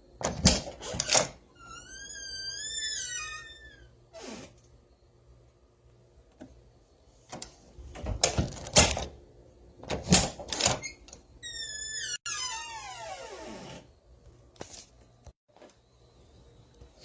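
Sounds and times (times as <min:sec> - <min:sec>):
door hinges creaking: 0:00.2 - 0:04.6, 0:09.9 - 0:13.9
door latch clunking and rattling: 0:07.9 - 0:09.2.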